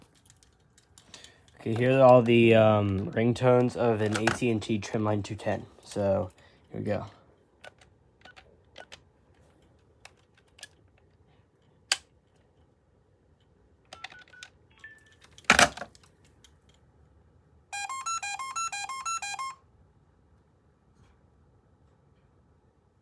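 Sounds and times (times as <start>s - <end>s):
phone handling clicks: 1.6s - 4.5s, 7.6s - 9.1s, 13.9s - 14.6s
short beeps: 17.8s - 19.6s
telephone electronic ringer: 17.8s - 19.6s.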